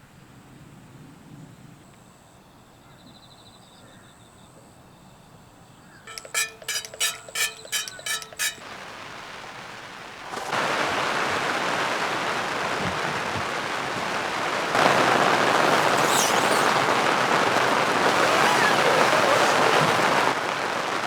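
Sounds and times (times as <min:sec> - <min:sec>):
heavy rain falling: 0:08.6 - 0:21.0.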